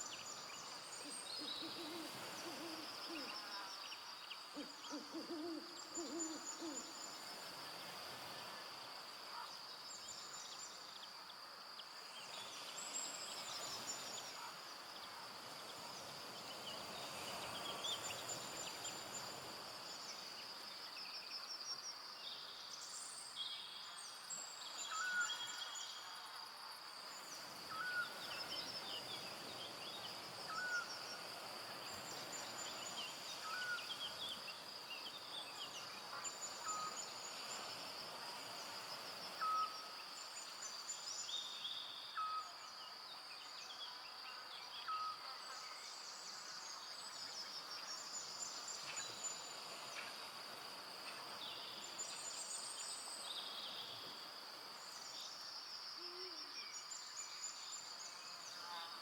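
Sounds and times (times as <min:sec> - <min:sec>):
high insect drone: 0:00.0 - 0:59.0
owl hooting: 0:01.4 - 0:03.3, 0:04.6 - 0:06.9.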